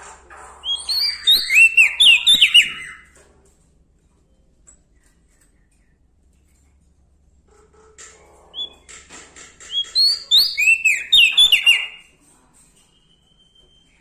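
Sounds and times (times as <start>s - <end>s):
loud high whistled bird notes: 0.6s - 3.1s, 9.7s - 12.0s
songbird chirps and trills: 0.6s - 3.2s, 9.6s - 14.0s
faint thin whistle: 12.8s - 14.0s.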